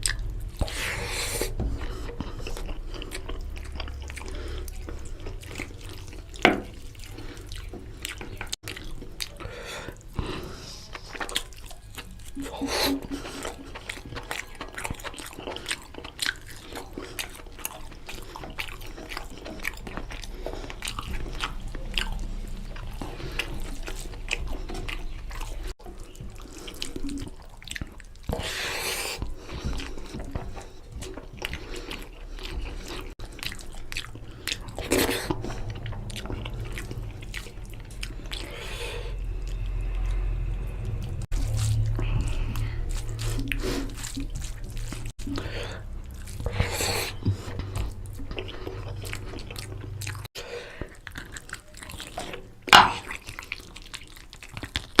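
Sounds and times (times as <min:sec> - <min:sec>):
wet chewing with mouth clicks: 0:00.0 - 0:55.0.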